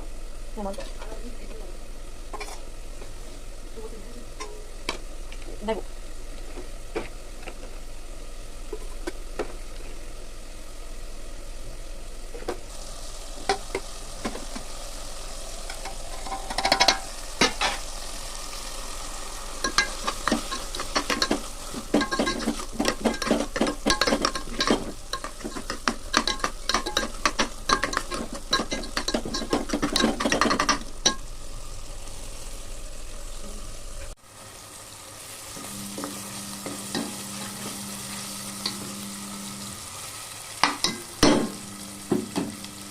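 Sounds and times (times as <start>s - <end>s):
chutney sizzling in a pan: 0.0s - 42.9s
spoon scraping a pan: 2.3s - 2.7s, 15.7s - 17.8s, 19.6s - 31.3s.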